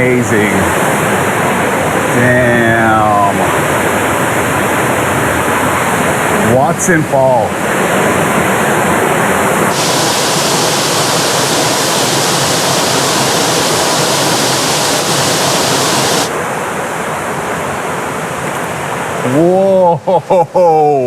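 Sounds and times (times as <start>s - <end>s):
waterfall rushing: 0.0s - 19.7s.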